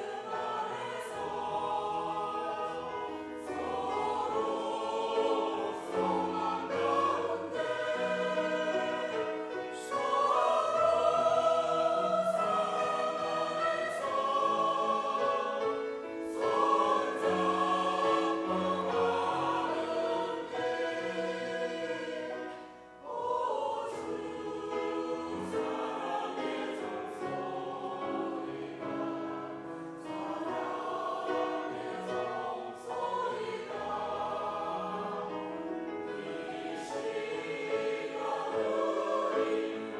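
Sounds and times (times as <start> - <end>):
church choir singing: 0.0 - 39.9.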